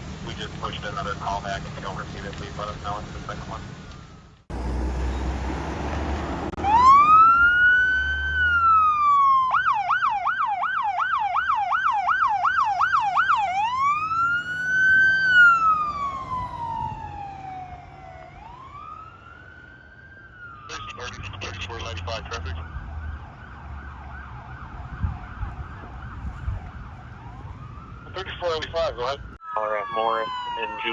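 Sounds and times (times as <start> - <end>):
electronic siren wailing and yelping: 6.5 - 19.5, 20.4 - 28.6, 29.4 - 30.9.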